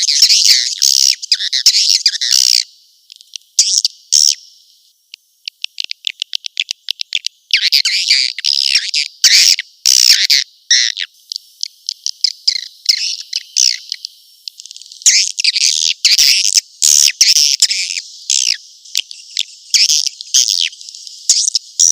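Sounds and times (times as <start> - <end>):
high bird chirping twitters: 5.5 - 11.0.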